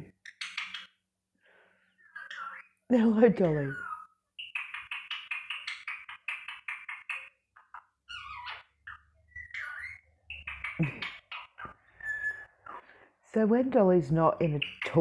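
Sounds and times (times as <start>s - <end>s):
parrot chattering: 2.1s - 13.0s, 14.3s - 15.0s.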